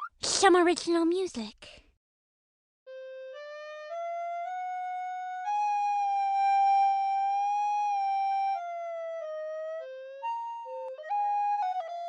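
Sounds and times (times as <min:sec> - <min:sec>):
flute-like wind instrument tune: 0:02.9 - 0:12.0.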